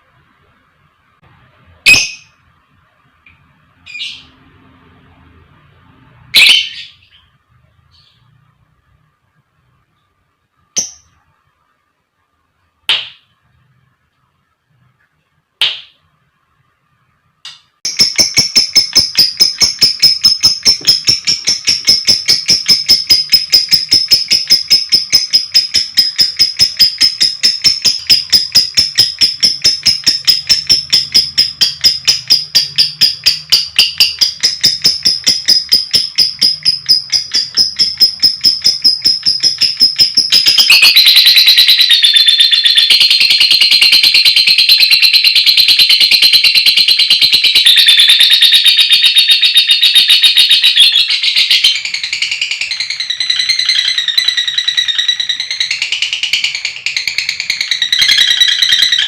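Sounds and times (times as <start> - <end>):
lovebird shrill chirping chatter: 17.9 - 59.0.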